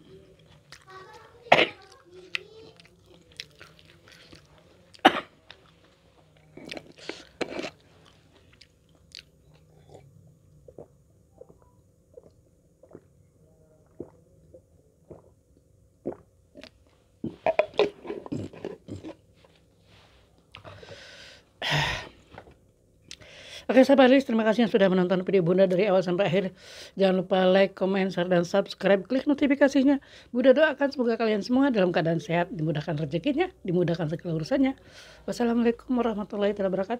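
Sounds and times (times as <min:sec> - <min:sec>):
food crunching: 0:00.3 - 0:13.1, 0:16.0 - 0:19.3
person biting and chewing: 0:06.4 - 0:10.1, 0:17.4 - 0:19.2.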